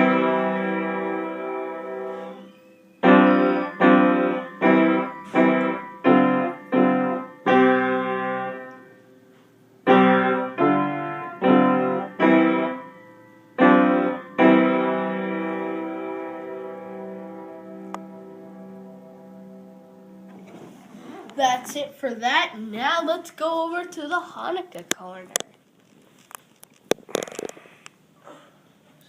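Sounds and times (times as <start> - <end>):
piano chords: 0.0 - 20.8.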